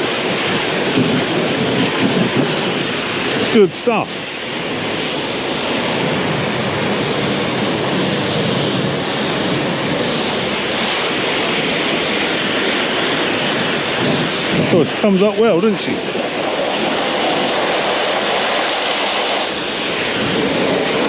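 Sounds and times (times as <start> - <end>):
pressure washer spraying water: 0.0 - 21.0.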